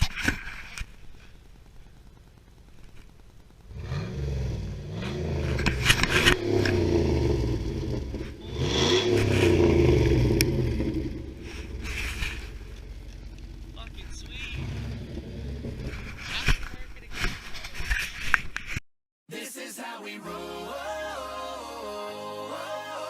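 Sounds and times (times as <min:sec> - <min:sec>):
car engine revving: 0:03.5 - 0:16.7.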